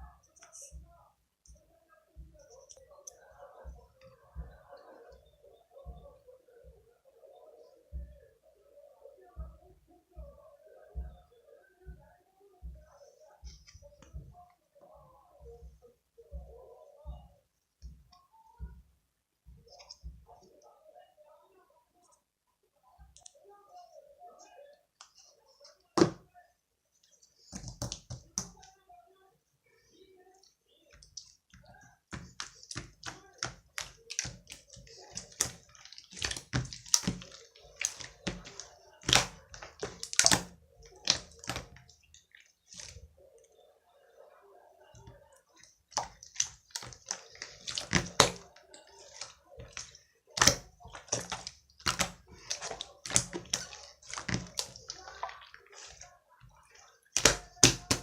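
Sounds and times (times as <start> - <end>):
slime squelching and popping: 27.5 - 28.7, 30.9 - 43.1, 45.0 - 58.0.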